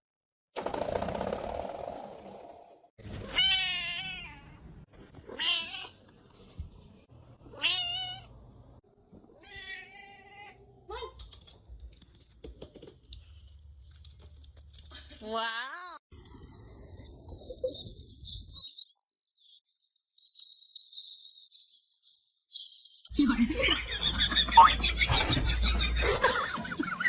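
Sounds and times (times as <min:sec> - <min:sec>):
cat meowing: 0:03.2 - 0:04.6, 0:05.3 - 0:06.0, 0:07.5 - 0:08.3, 0:09.4 - 0:11.1.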